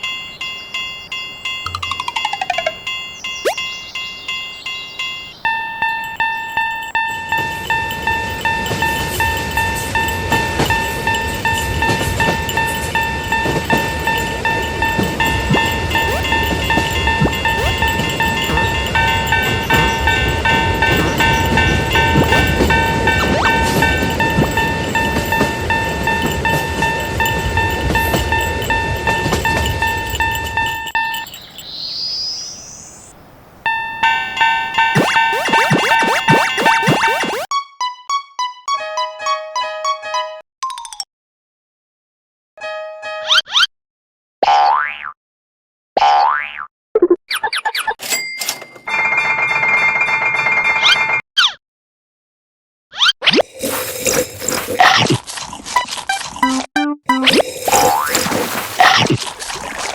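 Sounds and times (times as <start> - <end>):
railroad crossing bell ringing: 0.0 - 31.7, 33.7 - 37.4
train wheel clicks: 5.9 - 31.4
train rumbling past: 7.0 - 31.0
rising whistling glide: 34.9 - 37.5.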